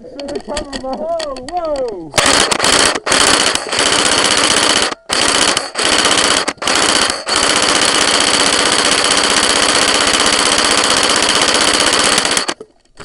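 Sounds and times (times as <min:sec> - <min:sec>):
electric airsoft gun firing bursts: 0:02.2 - 0:12.6.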